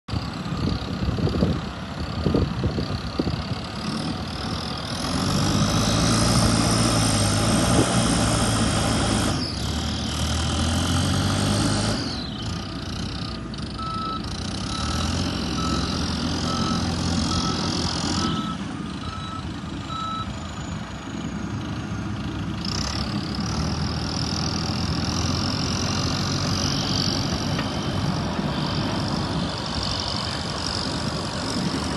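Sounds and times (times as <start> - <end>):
construction vehicle diesel engines: 0.0 - 31.9
reversing alarm beeping: 13.8 - 20.4.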